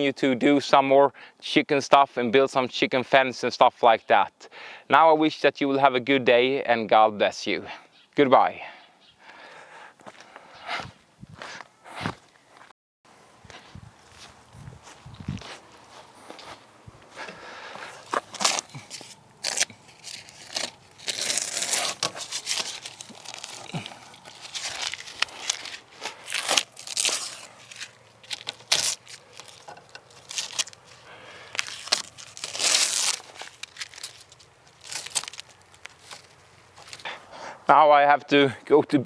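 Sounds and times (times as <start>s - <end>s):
rustling and crinkling: 13.4s - 37.1s.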